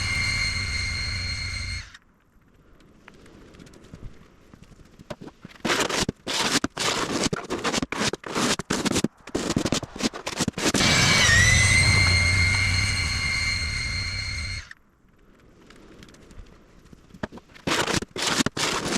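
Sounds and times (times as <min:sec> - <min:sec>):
snowblower motor humming: 0:00.0 - 0:01.9
high steady squeak: 0:00.0 - 0:02.0, 0:10.7 - 0:14.8
crackling and crunching bursts: 0:00.0 - 0:18.9.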